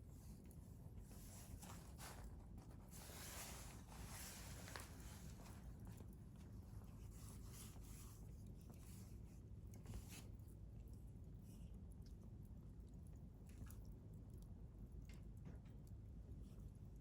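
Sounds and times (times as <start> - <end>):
wood fire crackling: 0.4 - 8.8.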